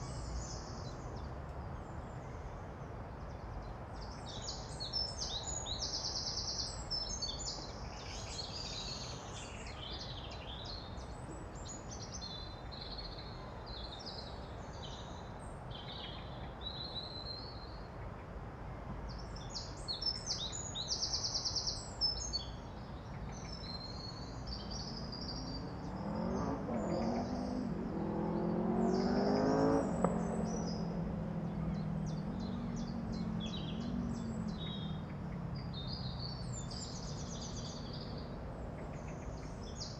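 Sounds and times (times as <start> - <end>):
songbirds singing: 0.0 - 39.9
vehicle engine passing: 24.3 - 39.9.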